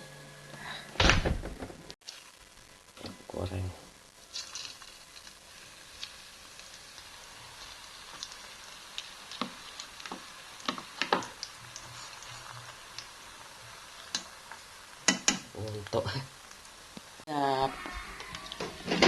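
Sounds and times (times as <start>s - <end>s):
chicken frying in hot oil: 2.0s - 19.0s
oil popping: 4.2s - 13.2s.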